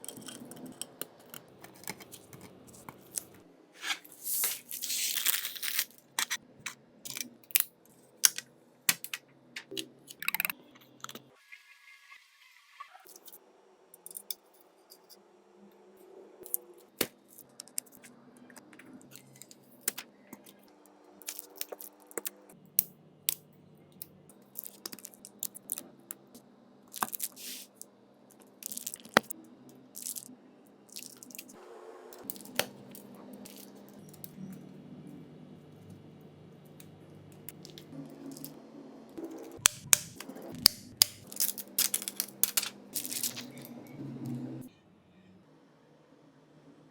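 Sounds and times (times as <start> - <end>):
small tools clicking and tapping: 0.0 - 3.4, 39.6 - 43.6
faint background music: 13.4 - 46.9.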